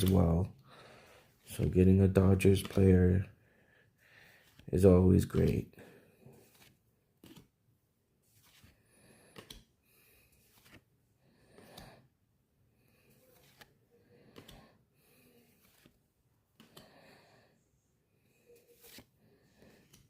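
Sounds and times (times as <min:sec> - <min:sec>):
trading cards rustling and clicking: 0:00.0 - 0:00.3, 0:01.4 - 0:03.2, 0:04.4 - 0:07.6, 0:08.3 - 0:12.0, 0:13.0 - 0:17.0, 0:18.4 - 0:20.0.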